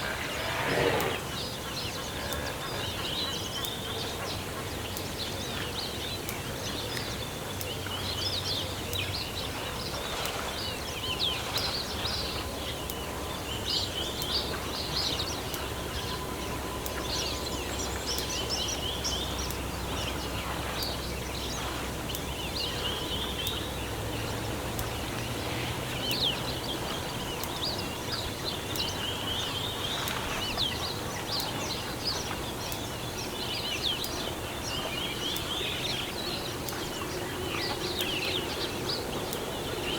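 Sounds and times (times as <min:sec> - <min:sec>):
birds chattering: 0:00.0 - 0:11.2.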